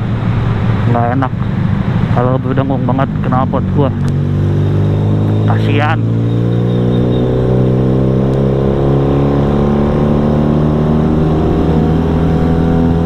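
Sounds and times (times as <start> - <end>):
engine droning at low revs: 0.0 - 13.0.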